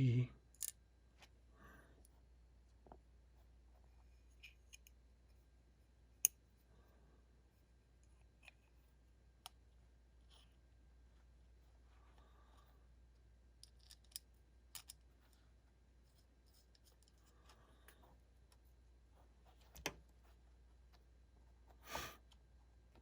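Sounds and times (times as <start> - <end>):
small metal parts clicking: 13.6 - 15.0.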